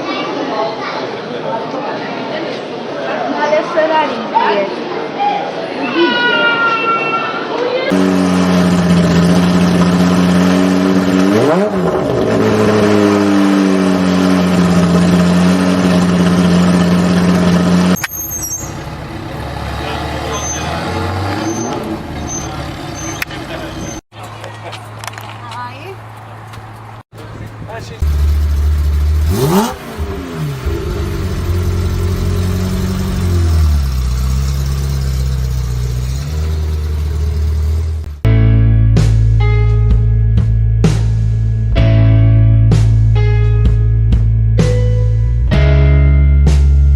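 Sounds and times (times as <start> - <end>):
sports car engine running: 7.9 - 18.0, 26.0 - 38.2
engine rev blip: 7.9 - 24.0, 28.0 - 38.2.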